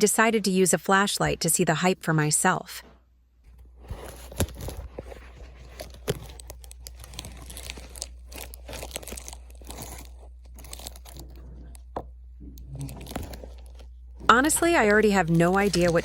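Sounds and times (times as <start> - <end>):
fabric rustling and tearing: 3.7 - 11.3, 15.1 - 16.0.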